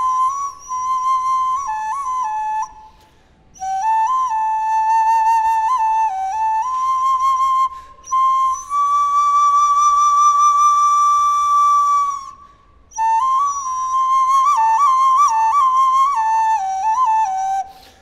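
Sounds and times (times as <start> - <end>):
wind instrument notes: 0.0 - 3.0.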